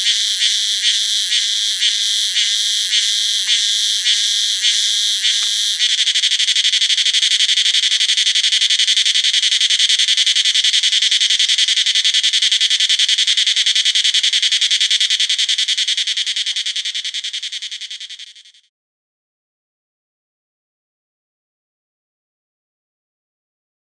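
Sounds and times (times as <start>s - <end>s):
cicada buzzing: 0.0s - 18.6s.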